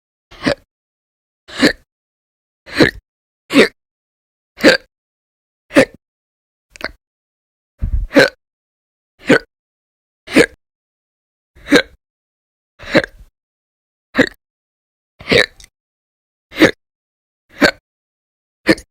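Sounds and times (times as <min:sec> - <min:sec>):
woman hiccuping: 0:08.1 - 0:08.4, 0:14.2 - 0:14.4.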